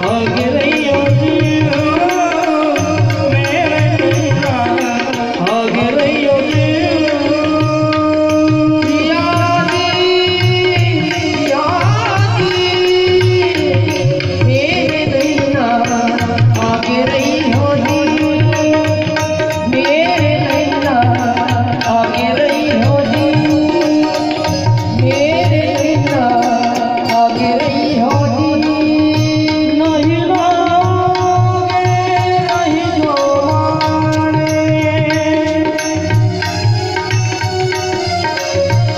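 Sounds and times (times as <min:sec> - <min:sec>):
steady drum rhythm: 0:00.0 - 0:38.9.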